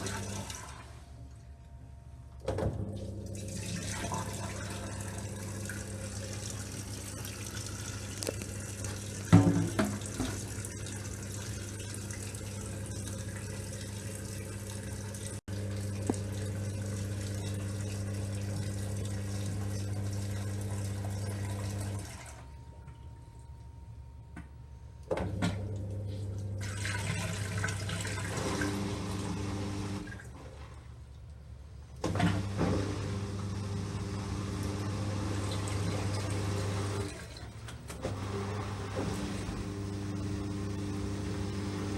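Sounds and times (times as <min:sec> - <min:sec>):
washing machine filling with water: 0:00.0 - 0:01.5, 0:02.4 - 0:22.6, 0:25.1 - 0:30.8, 0:32.0 - 0:41.9
steady hum: 0:38.0 - 0:41.9.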